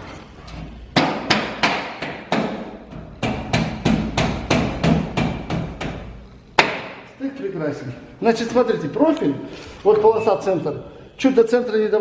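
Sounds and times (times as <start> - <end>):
hammer knocking on metal: 1.0 - 6.9.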